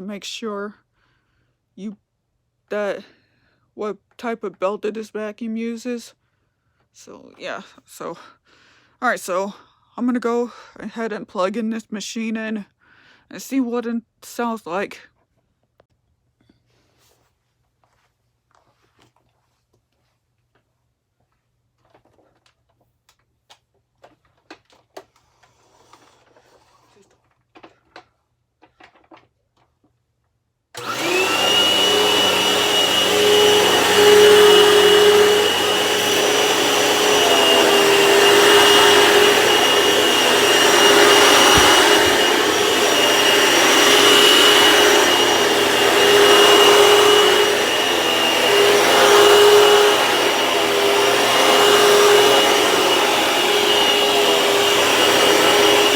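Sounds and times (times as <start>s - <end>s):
vacuum cleaner running with whine: 30.8s - 55.9s.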